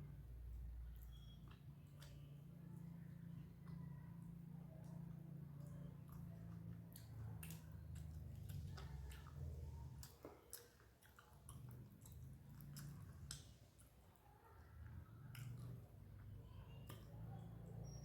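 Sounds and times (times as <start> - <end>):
faint low hum: 0.0 - 18.0
person chewing: 0.3 - 14.1, 15.2 - 17.5
mouth clicks and smacks: 5.6 - 14.0.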